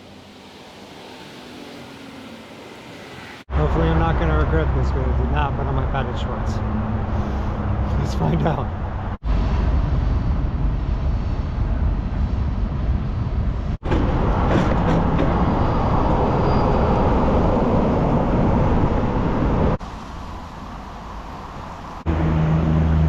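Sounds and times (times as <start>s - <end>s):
low rumble: 2.9s - 23.0s
wind buffeting microphone: 3.8s - 19.8s.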